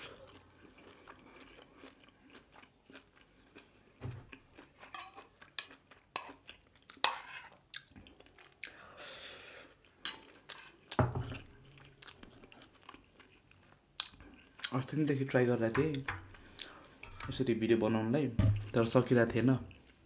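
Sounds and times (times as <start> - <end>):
close-miked chewing: 0.0 - 8.8, 9.6 - 15.4, 16.3 - 17.4.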